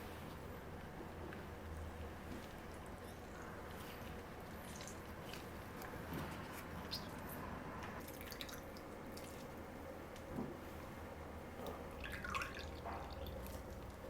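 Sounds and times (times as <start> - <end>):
faint liquid drips: 8.0 - 10.3, 11.6 - 14.0.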